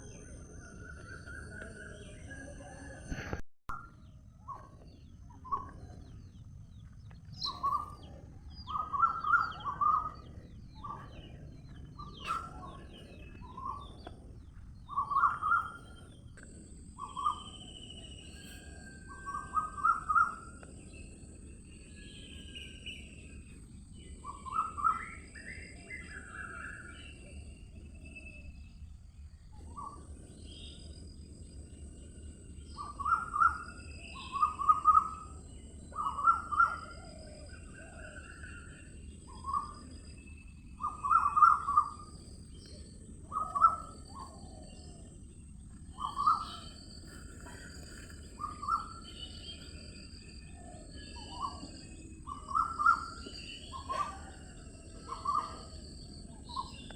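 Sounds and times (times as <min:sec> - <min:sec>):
steady background noise: 0:00.0 - 0:56.9
birds chirping: 0:04.0 - 0:56.9
birds whistling: 0:07.2 - 0:28.7, 0:29.6 - 0:56.9.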